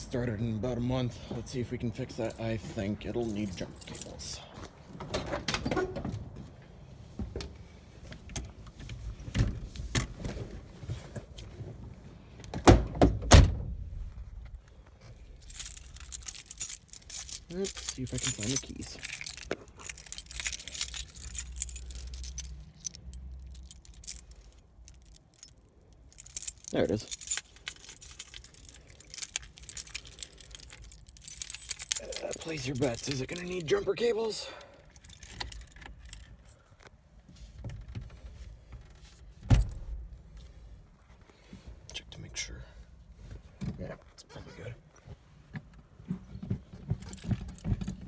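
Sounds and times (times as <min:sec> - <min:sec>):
keys jangling: 0:03.2 - 0:04.3, 0:15.4 - 0:33.8, 0:34.4 - 0:36.7, 0:47.0 - 0:48.0.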